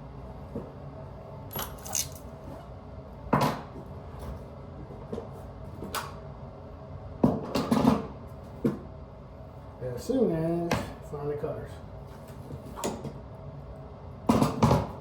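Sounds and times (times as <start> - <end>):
tools clinking and knocking: 1.5 - 2.3.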